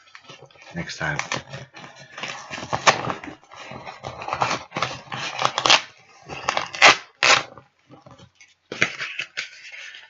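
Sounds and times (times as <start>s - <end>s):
cardboard box being cut open: 1.3s - 7.5s.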